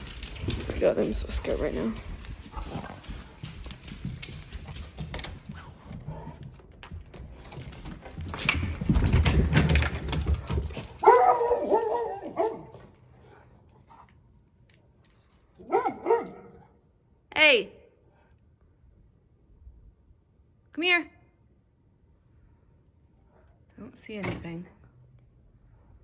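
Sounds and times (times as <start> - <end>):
clicks and rustling: 0.0 - 12.8
dogs whining and barking: 10.9 - 13.4, 15.6 - 16.7.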